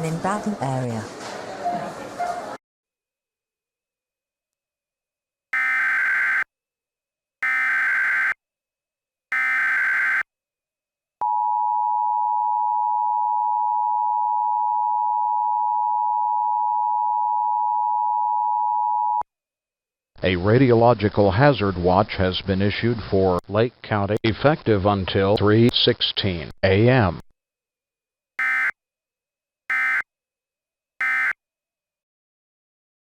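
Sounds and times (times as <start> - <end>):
harsh buzzy data bursts: 5.6 - 6.4, 7.4 - 8.4, 9.3 - 10.2, 28.4 - 28.7, 29.7 - 30.0, 31.0 - 31.4
steady attention tone: 31.0 - 31.4.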